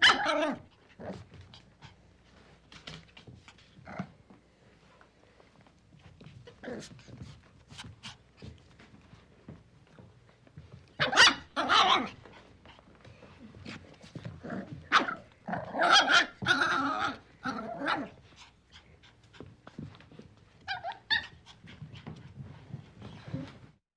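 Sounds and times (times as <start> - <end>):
puppy yips: 0.0 - 0.5, 11.0 - 12.2, 20.7 - 21.4
puppy barking and growling: 0.0 - 1.3, 11.0 - 12.3, 14.3 - 18.2, 20.7 - 21.4.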